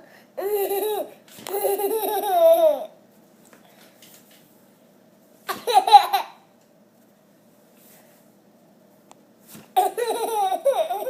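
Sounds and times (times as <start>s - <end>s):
baby laughing: 0.4s - 3.0s, 5.5s - 6.4s, 9.8s - 11.0s.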